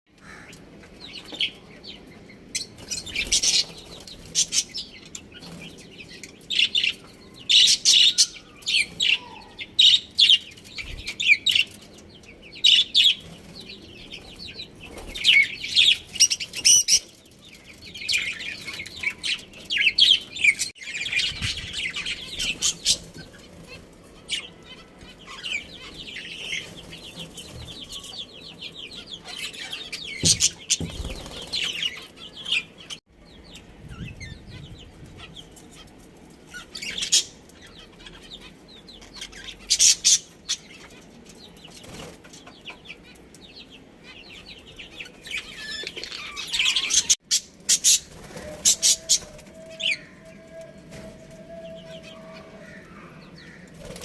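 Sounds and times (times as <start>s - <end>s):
budgerigars chirping: 42.4s - 50.1s.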